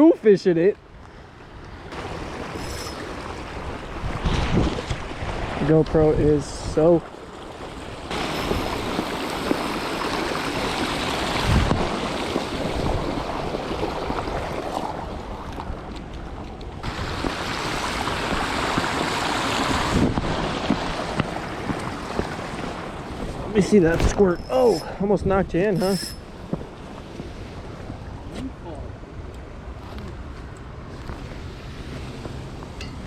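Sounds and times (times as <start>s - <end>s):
wind on microphone: 2.4s - 5.6s, 8.1s - 15.9s, 16.8s - 28.5s.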